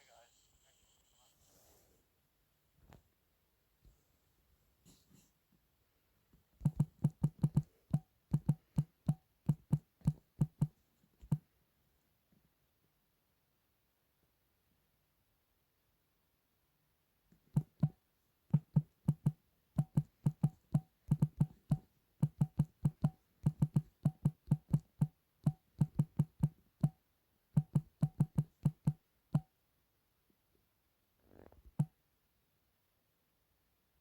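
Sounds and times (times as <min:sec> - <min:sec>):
sharp clicks with dull thuds: 0:06.6 - 0:11.4, 0:17.4 - 0:27.0, 0:27.6 - 0:29.5.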